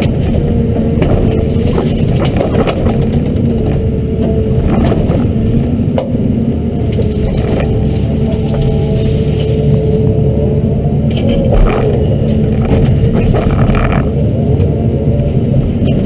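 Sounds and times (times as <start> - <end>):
excavator diesel engine running: 0.0 - 16.0
branches cracking and snapping: 6.8 - 10.0.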